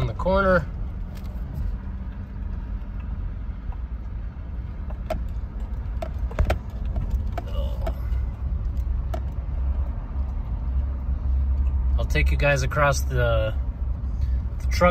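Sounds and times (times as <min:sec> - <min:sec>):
truck engine and tyres rumbling: 0:00.0 - 0:14.9
sharp knocks and rattles: 0:04.8 - 0:09.9.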